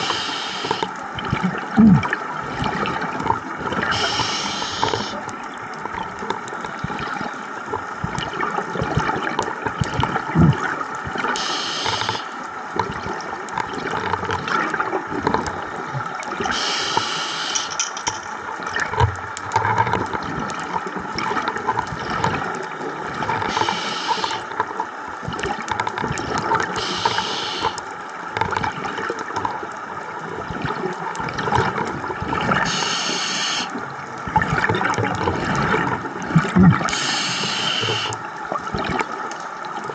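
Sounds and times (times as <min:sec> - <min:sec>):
hissing rush of exhaled bubbles: 0:00.0 - 0:05.3, 0:08.8 - 0:13.2, 0:15.9 - 0:17.8, 0:23.5 - 0:24.6, 0:26.1 - 0:27.8, 0:32.2 - 0:39.1
water bubbling and gurgling: 0:00.0 - 0:39.9.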